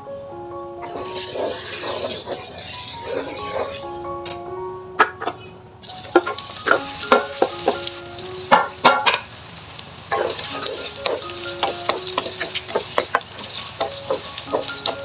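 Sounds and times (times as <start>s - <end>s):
spatula scraping pan: 0.8s - 4.0s, 6.1s - 7.8s, 10.1s - 15.0s
food sizzling in oil: 0.8s - 4.1s, 5.8s - 15.0s.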